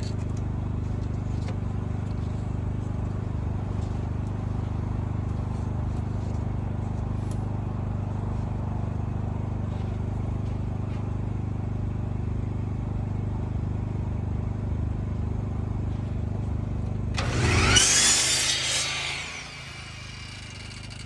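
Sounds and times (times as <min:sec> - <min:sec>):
motor humming: 0:17.2 - 0:21.0.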